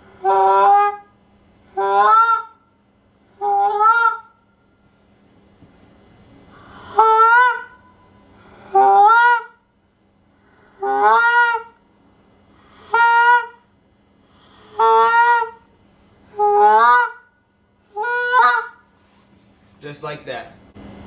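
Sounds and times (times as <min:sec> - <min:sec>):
goose call moans: 0:00.0 - 0:02.6, 0:03.4 - 0:04.4, 0:06.7 - 0:07.8, 0:08.6 - 0:09.6, 0:10.8 - 0:11.8, 0:12.8 - 0:13.6, 0:14.6 - 0:15.7, 0:16.3 - 0:17.3, 0:17.9 - 0:18.8.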